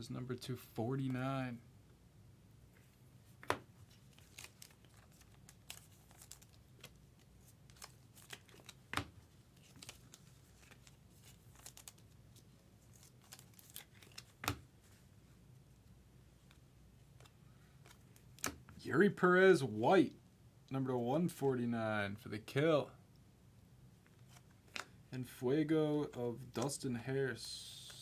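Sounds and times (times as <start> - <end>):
cards rustling: 3.3 - 15.1, 24.0 - 25.0, 25.8 - 28.0
wrapper crinkling and tearing: 3.9 - 7.0, 9.6 - 12.2, 12.9 - 14.4.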